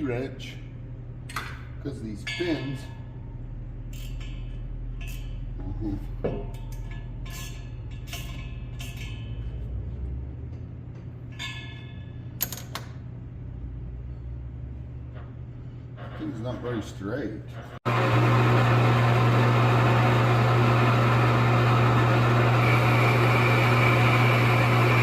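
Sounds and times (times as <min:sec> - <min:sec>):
steady low hum: 0:00.0 - 0:17.8
metallic clinks and knocks: 0:11.3 - 0:13.0.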